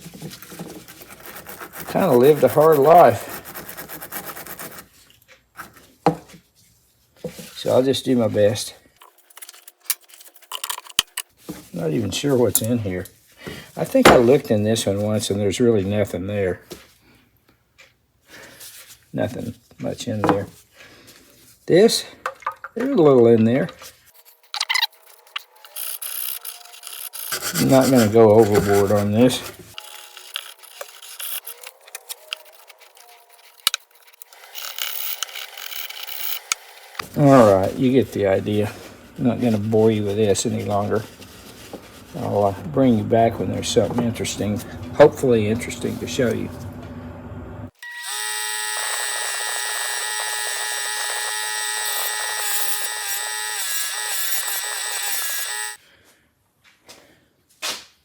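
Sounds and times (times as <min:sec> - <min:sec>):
scrubbing metal tin: 0:00.0 - 0:04.7, 0:24.2 - 0:34.2
wire wheel grinding metal whine: 0:24.5 - 0:41.5, 0:42.1 - 0:55.8.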